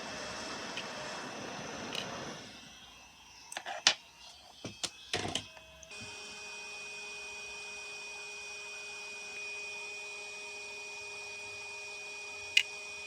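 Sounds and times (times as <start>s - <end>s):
high electrical whine with hiss: 0.0s - 7.6s.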